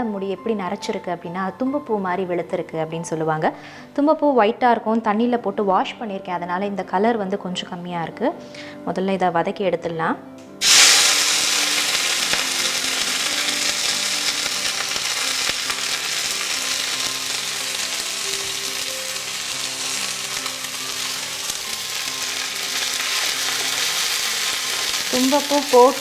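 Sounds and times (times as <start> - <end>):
flowers frying in hot oil: 10.6 - 26.0.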